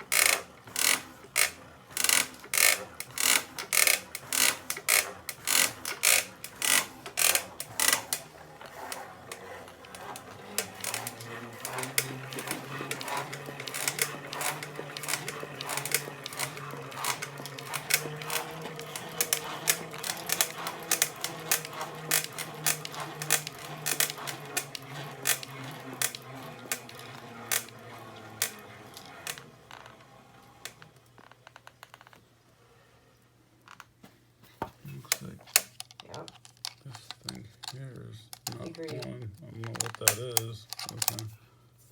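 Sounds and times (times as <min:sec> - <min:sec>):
rapid irregular clicking: 0:00.0 - 0:30.0, 0:34.9 - 0:41.4
small machine humming: 0:00.0 - 0:31.6.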